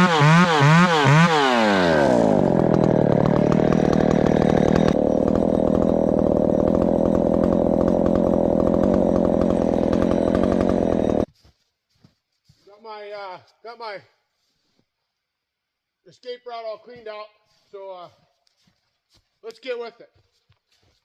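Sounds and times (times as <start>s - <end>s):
two-stroke chainsaw running: 0.0s - 11.3s.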